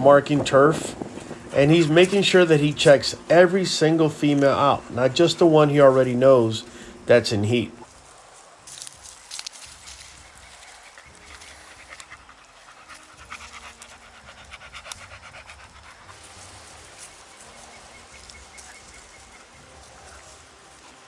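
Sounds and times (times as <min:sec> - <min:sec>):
dog panting: 0:00.0 - 0:07.0, 0:11.5 - 0:17.2.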